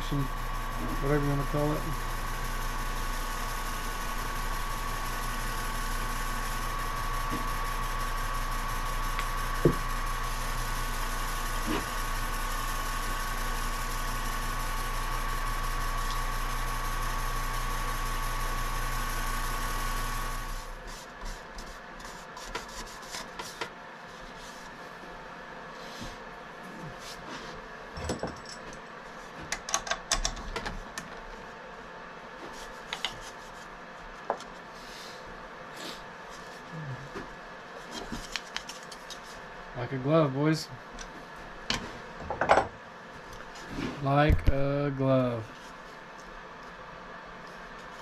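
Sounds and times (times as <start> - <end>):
wood lathe motor humming: 0.0 - 20.8.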